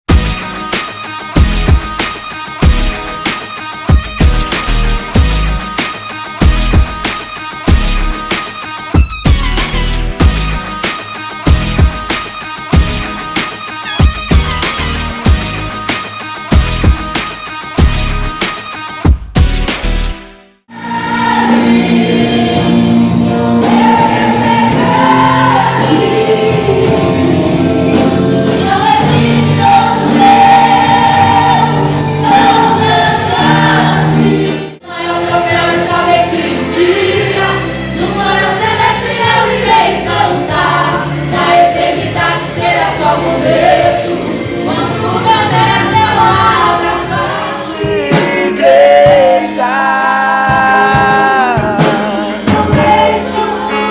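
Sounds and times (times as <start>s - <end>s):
instrumental backing: 0.1s - 53.9s
gospel choir singing: 20.7s - 53.9s.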